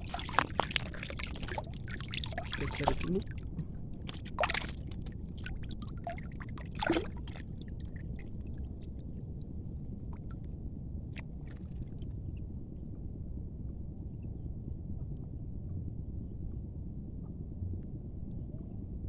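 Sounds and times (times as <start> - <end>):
water sloshing and splashing: 0.0 - 9.1, 11.2 - 12.0
steady low rumble: 0.0 - 19.0.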